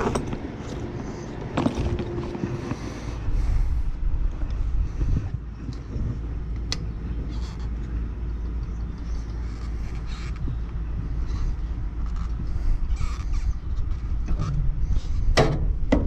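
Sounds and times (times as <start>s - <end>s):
scrapes and rattles of tools: 0.0s - 2.9s
low outdoor rumble: 0.0s - 16.0s.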